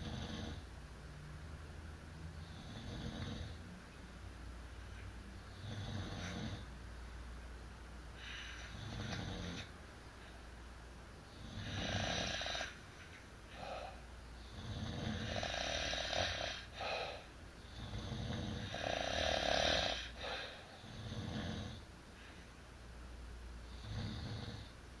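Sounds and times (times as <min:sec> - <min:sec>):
people snoring: 0:00.0 - 0:00.6, 0:02.4 - 0:03.6, 0:05.5 - 0:06.7, 0:08.6 - 0:09.7, 0:11.4 - 0:12.8, 0:13.6 - 0:21.8, 0:23.7 - 0:24.7.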